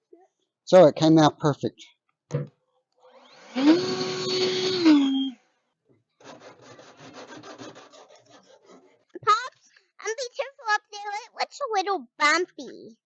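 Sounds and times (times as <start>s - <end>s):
power tool motor spinning: 3.1s - 5.3s
rasping scrape on sheet metal: 6.2s - 9.1s.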